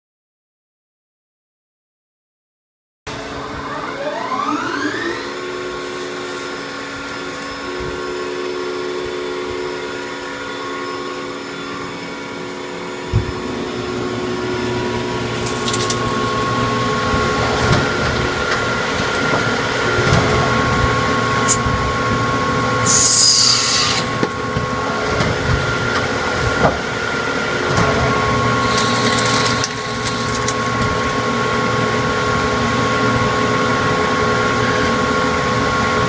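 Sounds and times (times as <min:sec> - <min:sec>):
lathe whining: 0:03.1 - 0:36.0
rough noisy grinding: 0:22.7 - 0:26.7, 0:27.4 - 0:31.8.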